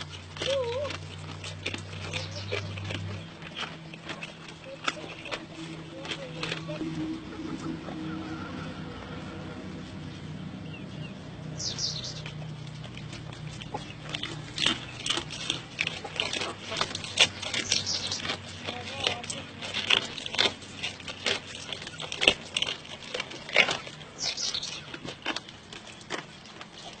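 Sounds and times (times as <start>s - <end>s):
goat chewing with crunching: 0.0s - 27.0s.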